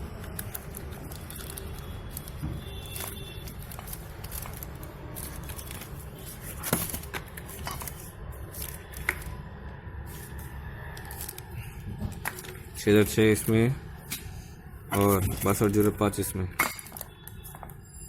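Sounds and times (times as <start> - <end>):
clicks and knocks of machine parts: 16.6 - 17.8.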